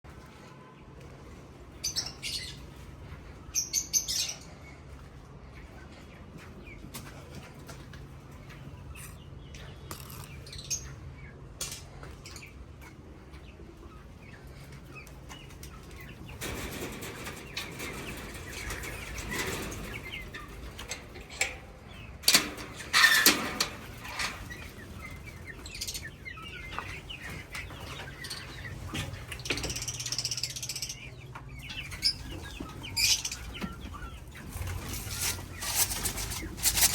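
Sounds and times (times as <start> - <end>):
parrots chirping: 24.2 - 34.3.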